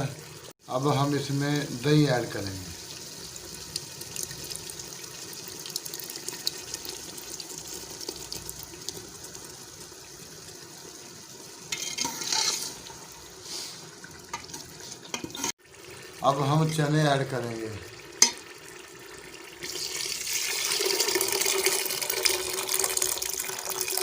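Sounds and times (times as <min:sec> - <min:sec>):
meat frying in oil: 0:00.0 - 0:24.0.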